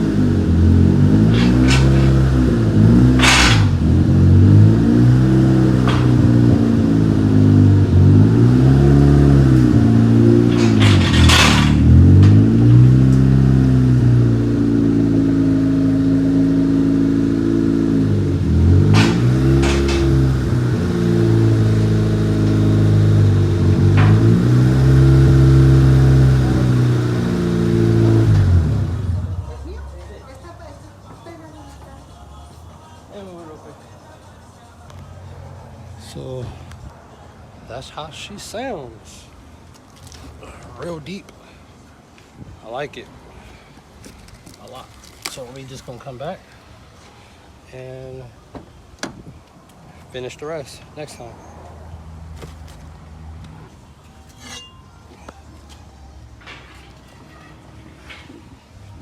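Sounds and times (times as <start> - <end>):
car engine revving: 0.0 - 29.5.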